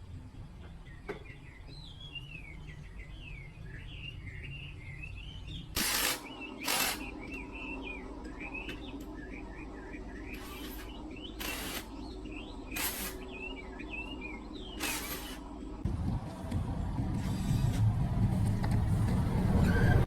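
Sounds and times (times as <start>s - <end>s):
birds chirping: 0.0s - 15.8s
low background rumble: 0.0s - 20.0s.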